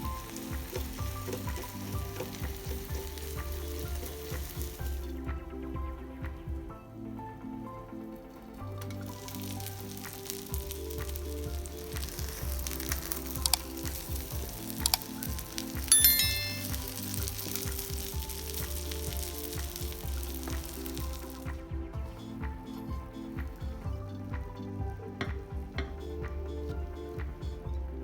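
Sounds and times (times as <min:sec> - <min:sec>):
food sizzling in a pan: 0:00.0 - 0:05.1, 0:09.0 - 0:21.5
background music: 0:00.0 - 0:28.0
sharp clink with ring: 0:15.9 - 0:16.6.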